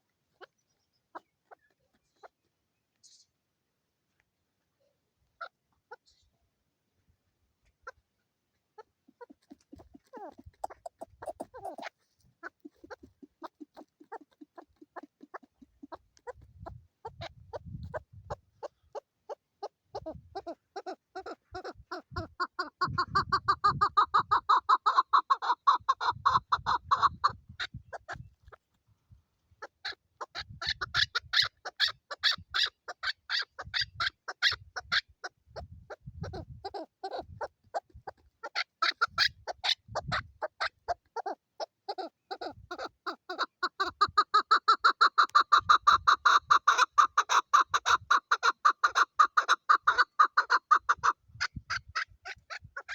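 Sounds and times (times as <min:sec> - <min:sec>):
partridge clucking call: 0:09.1 - 0:18.0, 0:20.0 - 0:28.6, 0:29.6 - 0:41.3, 0:42.0 - 0:52.9.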